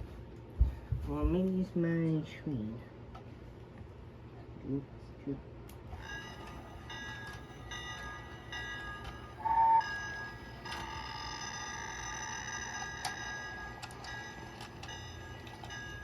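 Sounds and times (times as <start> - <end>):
electronic beeping tones: 9.4 - 10.0.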